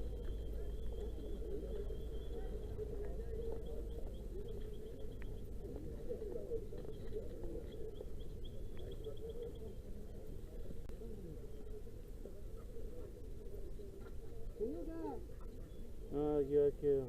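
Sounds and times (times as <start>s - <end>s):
low engine hum: 0.0s - 8.8s.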